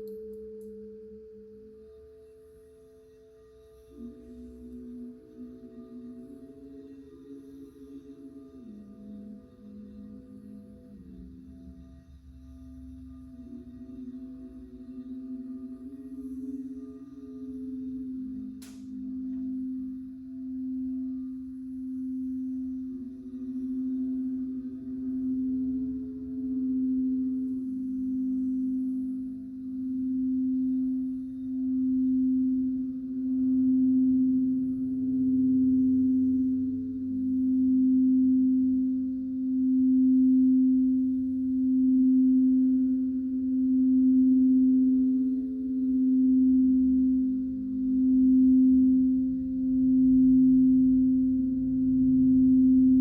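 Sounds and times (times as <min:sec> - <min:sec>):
singing bowl ringing: 0:12.6 - 0:53.0.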